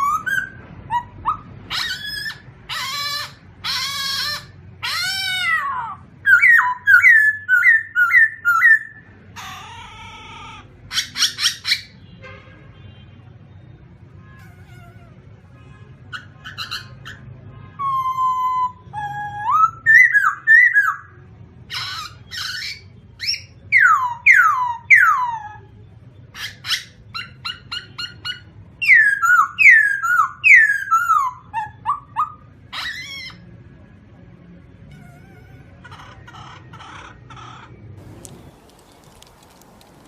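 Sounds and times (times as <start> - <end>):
songbird singing: 0.0 - 9.1, 35.9 - 40.0.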